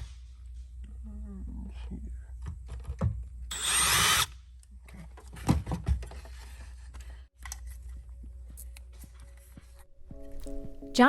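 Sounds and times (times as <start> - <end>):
power drill boring into metal: 3.5 - 4.3.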